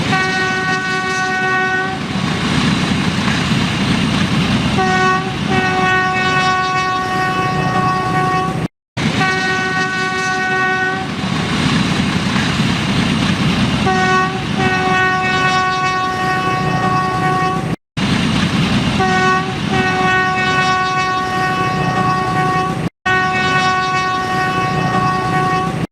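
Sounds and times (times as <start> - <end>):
train horn blasts: 0.0 - 2.1, 4.8 - 11.2, 13.8 - 17.8, 19.0 - 25.9
moving train rumble and clatter: 0.0 - 25.9.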